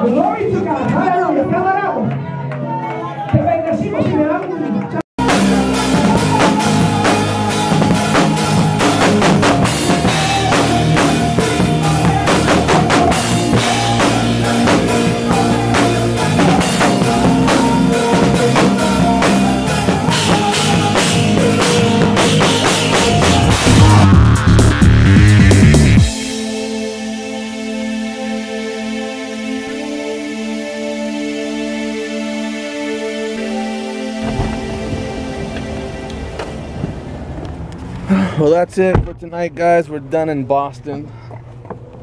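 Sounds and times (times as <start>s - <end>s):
drum kit beating: 5.2s - 26.4s
live band playing: 5.2s - 26.9s.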